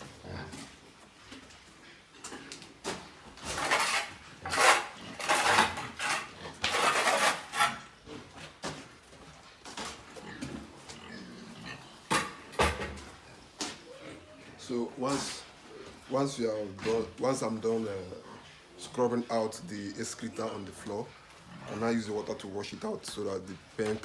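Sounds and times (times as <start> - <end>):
brush scrubbing floor: 3.4 - 8.0.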